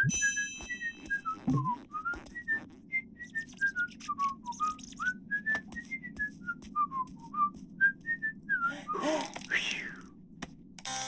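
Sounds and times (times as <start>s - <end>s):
person whistling a tune: 0.0s - 9.1s.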